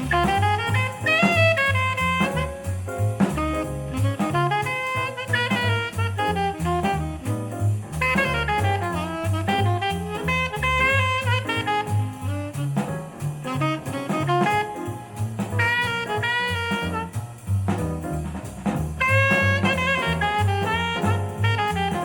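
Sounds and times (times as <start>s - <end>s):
horn melody: 0.0s - 18.2s, 19.0s - 22.0s
bass notes: 0.0s - 22.0s
drums: 0.0s - 22.0s.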